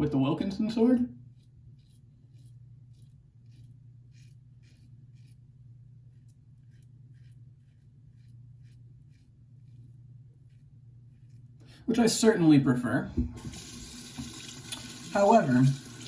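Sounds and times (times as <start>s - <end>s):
low steady hum: 0.0s - 16.0s
razor scraping stubble: 0.7s - 11.7s.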